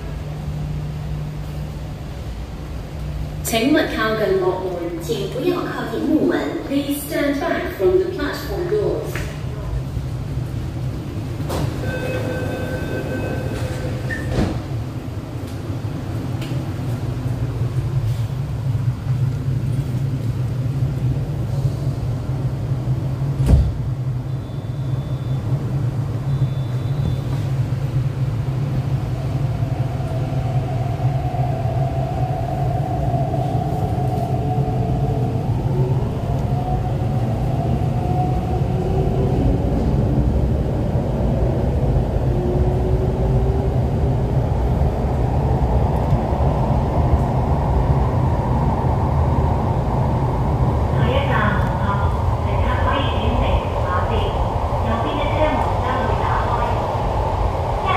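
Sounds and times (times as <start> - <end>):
train rumbling: 0.0 - 57.9
short beep tone: 24.3 - 25.4.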